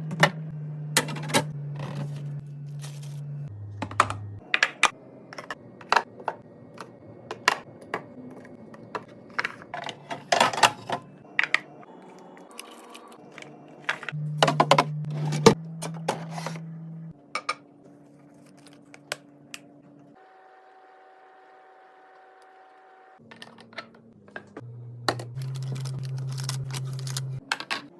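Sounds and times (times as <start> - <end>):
plastic containers clattering: 3.8 - 11.7, 23.2 - 27.9.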